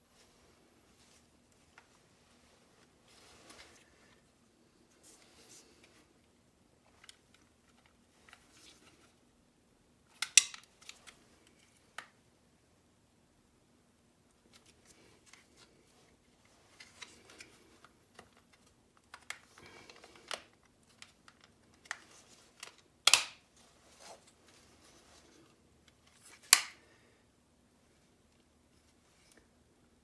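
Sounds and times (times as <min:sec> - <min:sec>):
sharp plastic snaps: 0:10.1 - 0:11.1, 0:22.6 - 0:23.4, 0:26.4 - 0:26.8.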